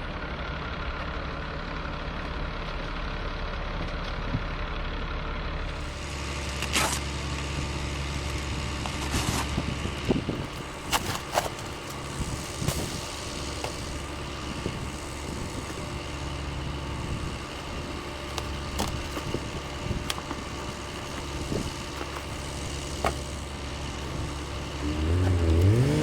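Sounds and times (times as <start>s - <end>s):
truck engine idling: 0.0s - 26.0s
sharp clicks and knocks: 10.4s - 25.8s.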